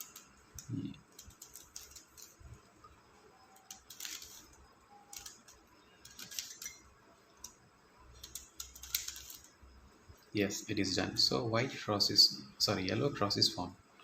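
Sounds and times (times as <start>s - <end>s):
puzzle cube plastic clicks: 0.0s - 2.4s, 3.6s - 6.8s, 8.2s - 9.5s.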